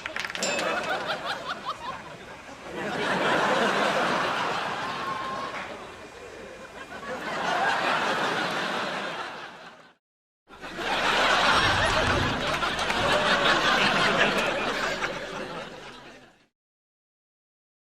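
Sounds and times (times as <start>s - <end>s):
audience laughter: 0.3s - 16.5s
studio audience oooh: 4.6s - 5.9s.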